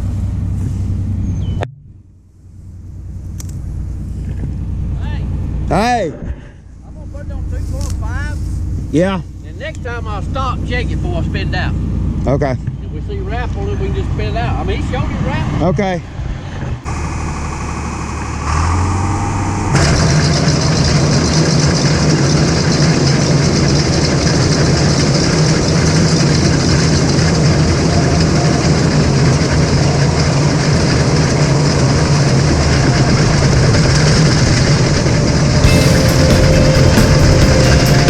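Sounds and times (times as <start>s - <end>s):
tractor engine running: 0.0s - 5.9s, 16.7s - 38.0s.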